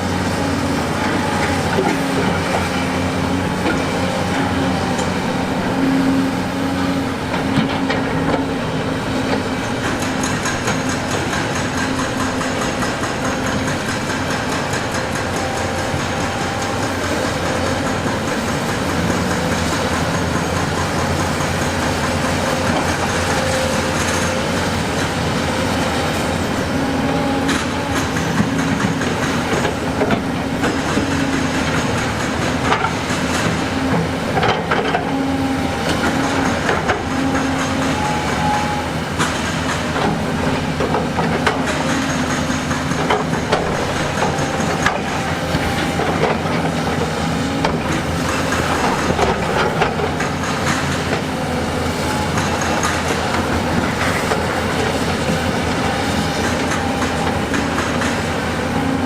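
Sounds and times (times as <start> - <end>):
heavy machine diesel engine: 0.0 - 59.0.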